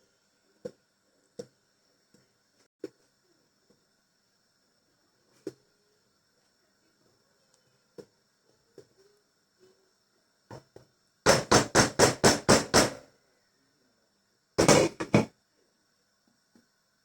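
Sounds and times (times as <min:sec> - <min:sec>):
sharp knocks: 0:14.6 - 0:15.3.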